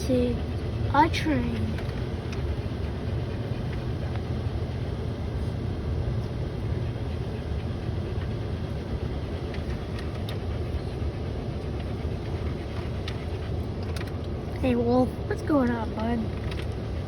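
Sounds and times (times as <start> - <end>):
train wheels clicking on rails: 0.0 - 4.8
train rumbling past: 0.0 - 17.0.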